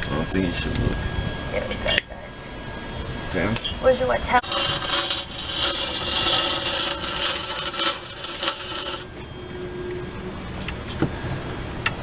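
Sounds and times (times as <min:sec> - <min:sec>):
arc welder crackling: 0:04.4 - 0:09.1.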